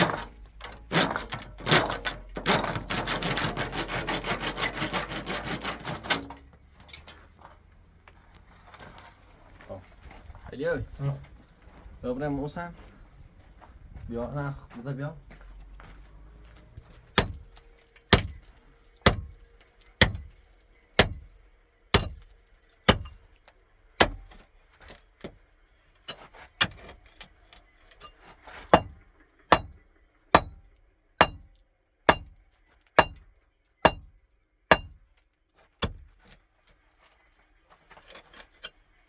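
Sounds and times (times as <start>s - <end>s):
hammer striking metal: 17.2s - 17.5s, 18.1s - 18.4s, 19.0s - 19.4s, 20.0s - 20.3s, 21.0s - 21.3s, 22.0s - 22.3s, 22.9s - 23.2s, 28.7s - 29.8s, 30.4s - 30.6s, 31.2s - 31.5s, 32.1s - 32.4s, 33.0s - 33.2s, 33.8s - 34.1s, 34.7s - 35.0s.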